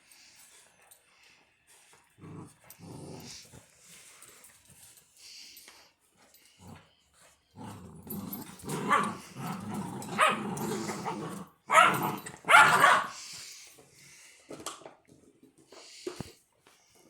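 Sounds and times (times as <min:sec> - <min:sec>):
puppies growling: 0:02.2 - 0:03.6, 0:07.5 - 0:13.2
dog barks: 0:08.7 - 0:09.2, 0:10.1 - 0:13.2.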